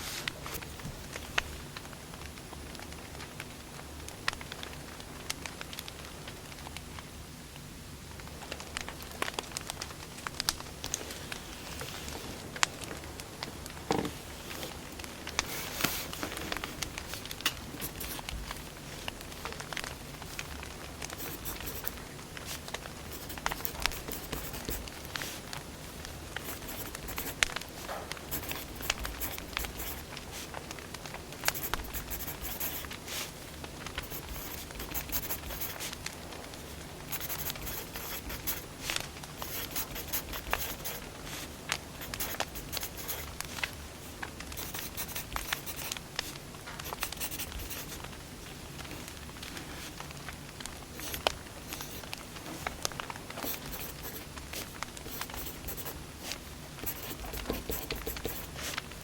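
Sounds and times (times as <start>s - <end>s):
soft steady hiss: 0.0s - 59.0s
wood fire crackling and popping: 1.1s - 7.0s, 8.1s - 11.1s, 16.3s - 21.2s, 24.8s - 31.5s.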